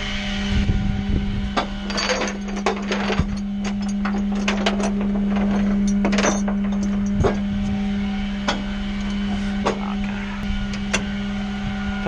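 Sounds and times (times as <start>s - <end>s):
hydraulic pump droning: 0.0s - 12.0s
metal chains clinking: 1.8s - 7.4s.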